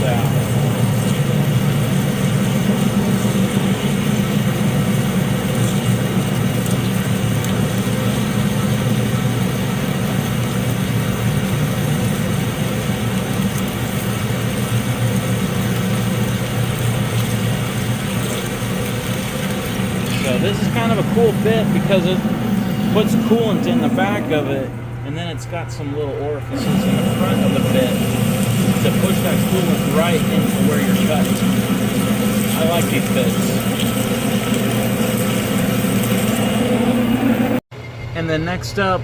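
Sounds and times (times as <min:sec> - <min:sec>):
metal lathe humming: 0:17.8 - 0:24.8, 0:26.5 - 0:37.6.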